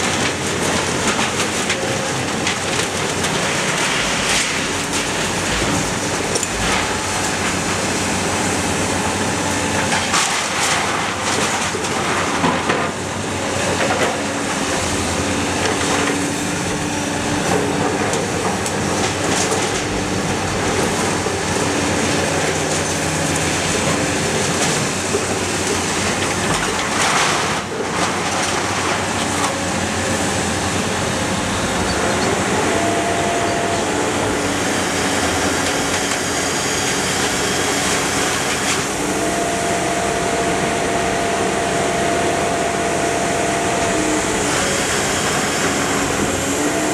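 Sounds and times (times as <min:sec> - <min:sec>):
car baler machinery running: 0:00.0 - 0:46.9
loud metal clatter: 0:22.4 - 0:29.9
high steady whine: 0:25.6 - 0:46.9.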